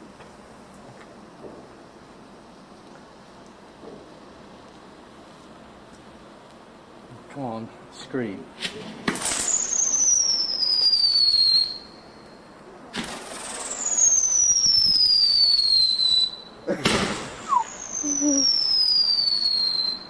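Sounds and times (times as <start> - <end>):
whistling fireworks: 8.6 - 20.0.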